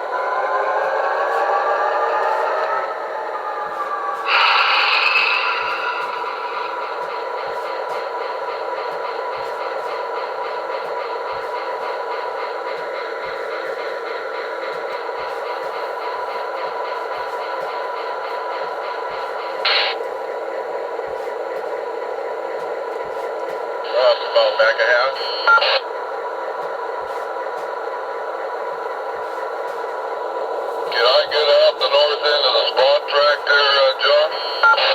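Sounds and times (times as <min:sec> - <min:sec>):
diesel locomotive engine running: 0:00.0 - 0:34.9.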